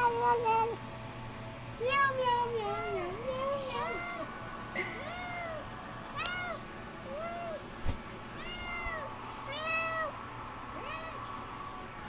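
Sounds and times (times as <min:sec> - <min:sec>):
kitten meowing: 0:06.2 - 0:07.6, 0:08.4 - 0:10.1.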